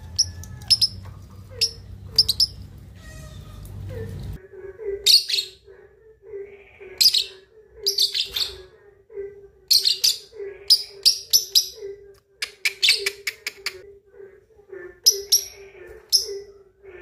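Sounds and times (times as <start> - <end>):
lovebird chirping: 0.2 - 3.4, 7.0 - 8.7, 9.7 - 11.9, 15.1 - 16.6.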